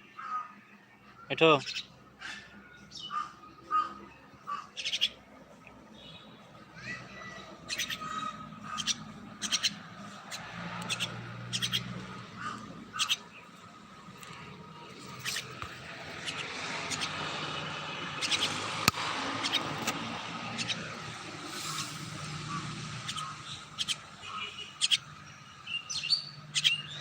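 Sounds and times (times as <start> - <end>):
bird chirps and clicks: 8.7 - 12.0, 12.9 - 13.2, 15.1 - 17.2, 18.2 - 21.9, 23.0 - 25.0, 25.9 - 27.0.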